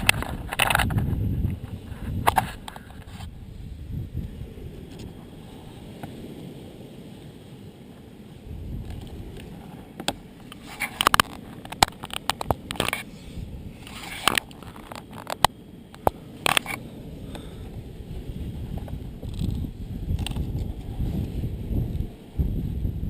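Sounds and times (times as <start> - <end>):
camera handling clicks and knocks: 0.0 - 1.0, 8.9 - 13.0, 14.2 - 16.8
low wind rumble: 0.0 - 23.0.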